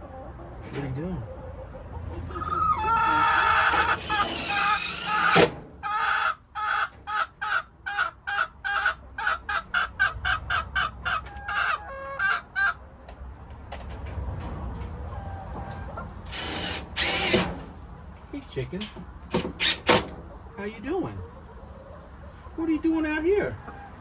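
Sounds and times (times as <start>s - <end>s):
chicken clucking: 0.0s - 12.8s, 14.5s - 16.2s, 20.2s - 24.0s.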